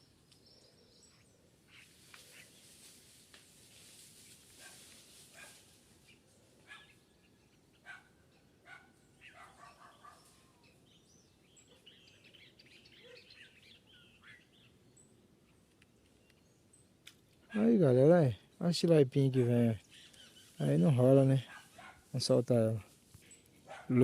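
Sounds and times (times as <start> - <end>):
faint bird chirps: 0.0 - 2.8, 6.0 - 17.7, 19.6 - 21.9
soft clicks: 15.6 - 16.4.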